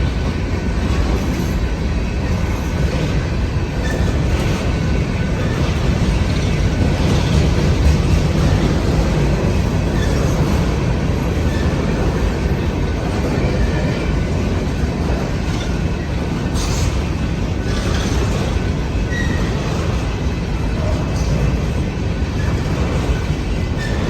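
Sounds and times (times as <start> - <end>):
train wheels rumbling on rails: 0.0 - 24.0.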